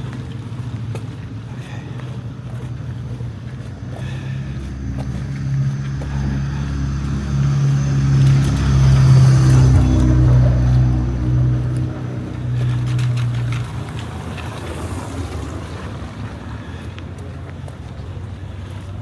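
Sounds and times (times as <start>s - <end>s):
vehicle engine passing by: 3.1s - 19.0s.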